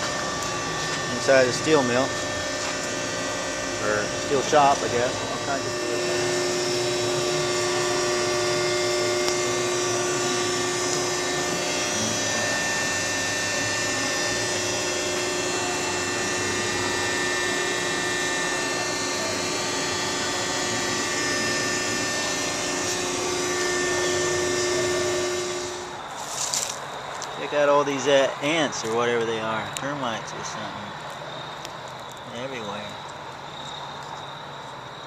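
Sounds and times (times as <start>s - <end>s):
machinery drone: 0.0s - 35.0s
machinery whining tones: 0.0s - 35.0s.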